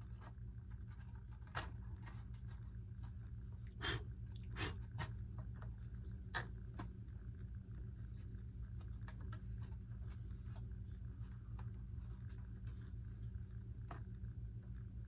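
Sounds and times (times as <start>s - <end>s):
steady low hum: 0.0s - 15.0s.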